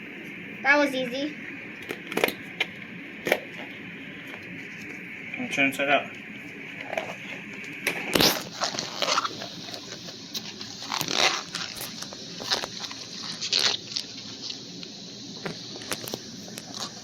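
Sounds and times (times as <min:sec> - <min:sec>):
rubber rubbing and scraping: 0:08.0 - 0:14.6.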